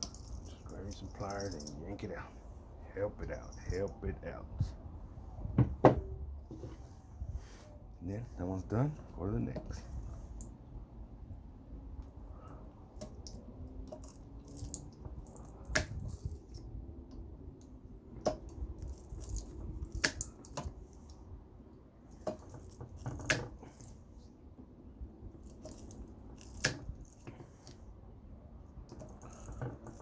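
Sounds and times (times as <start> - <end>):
wire cutters snapping: 18.2 - 20.7.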